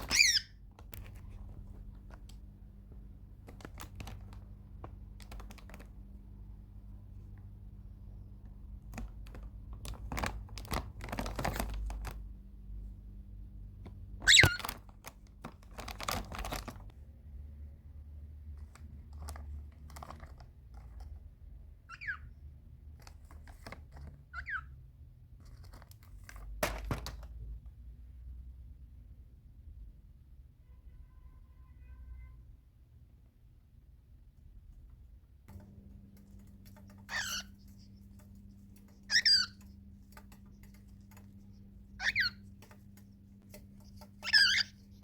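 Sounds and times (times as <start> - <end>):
cockatiel rustling and tapping: 0.0 - 12.4, 13.7 - 17.0, 18.5 - 22.2, 22.8 - 24.7, 25.3 - 27.6, 35.5 - 45.0
clicks and crinkling: 3.4 - 6.1, 8.8 - 12.3, 13.9 - 17.0.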